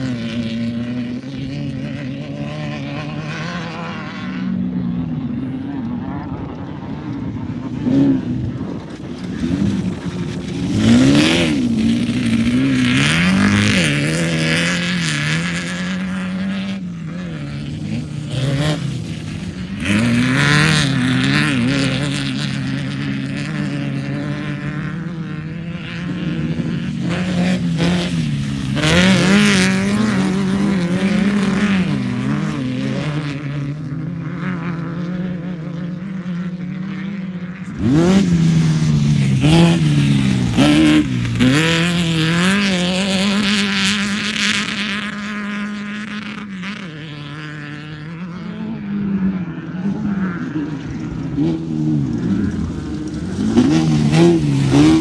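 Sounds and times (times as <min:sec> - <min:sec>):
off-road vehicle engines revving: 0:00.0 - 0:55.0
tyre noise on dirt: 0:07.8 - 0:15.3.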